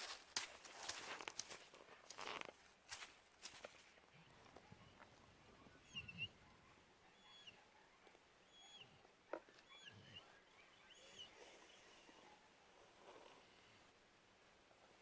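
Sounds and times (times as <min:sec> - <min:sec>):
faint bird calls: 0:04.1 - 0:13.9.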